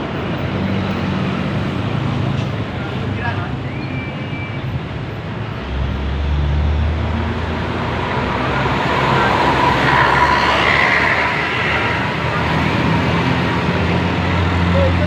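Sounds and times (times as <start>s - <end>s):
heavy vehicle engine rumble: 0.0s - 15.0s
vehicle engine and tyre noise: 0.0s - 15.0s.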